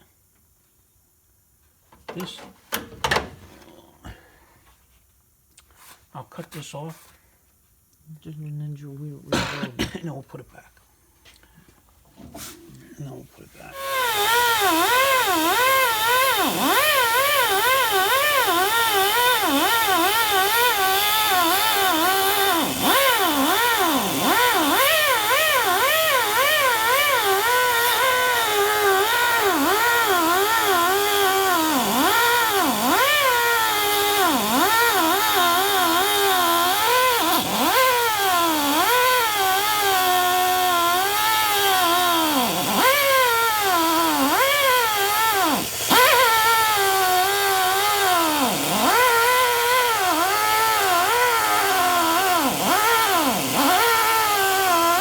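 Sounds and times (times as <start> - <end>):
power grinder cutting metal: 13.8 - 55.0.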